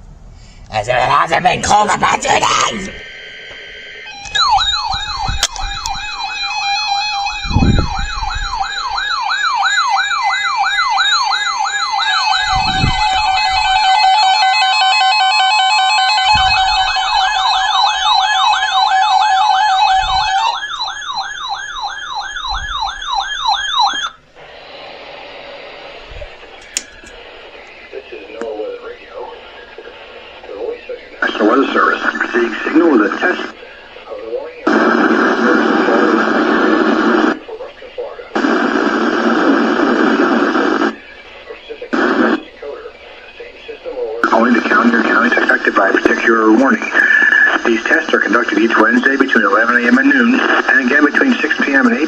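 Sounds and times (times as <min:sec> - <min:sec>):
radio-like hiss: 0:00.0 - 0:10.6, 0:12.2 - 0:19.0, 0:24.3 - 0:52.0
electronic siren yelp: 0:01.1 - 0:24.3
second siren tone: 0:02.8 - 0:24.2.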